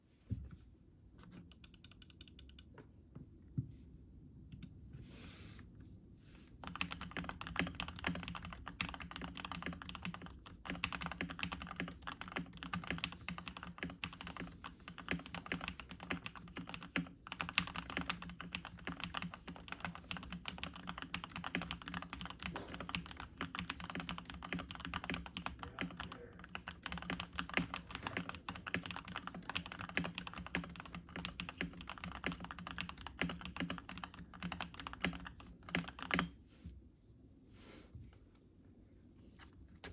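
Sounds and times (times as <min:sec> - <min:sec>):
mechanical keyboard typing: 0:06.6 - 0:36.3.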